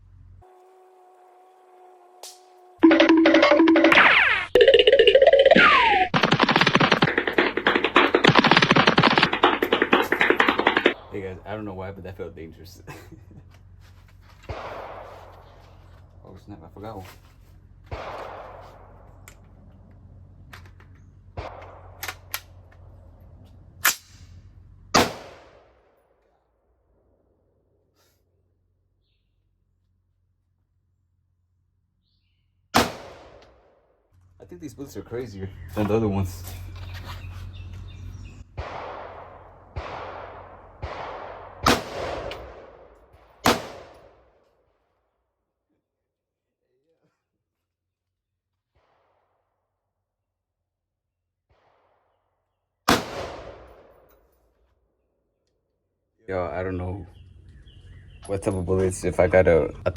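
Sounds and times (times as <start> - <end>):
gunshots with ringing tail: 5.4 - 12.2, 14.5 - 15.8, 17.9 - 19.3, 21.3 - 22.7, 24.9 - 26.0, 32.8 - 33.8, 38.6 - 44.4, 52.9 - 54.1.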